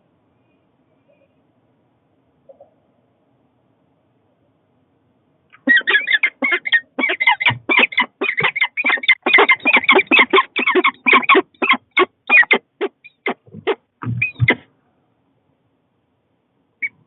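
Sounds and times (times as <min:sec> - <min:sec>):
goose honking: 0:05.6 - 0:14.6.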